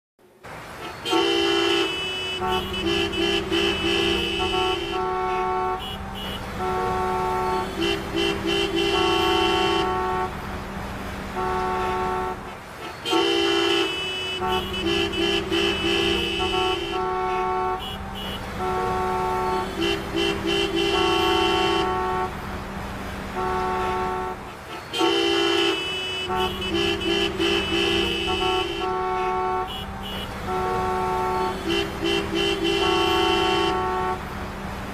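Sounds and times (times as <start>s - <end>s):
idling traffic hum: 0.2s - 34.9s
car horns honking: 0.6s - 34.9s.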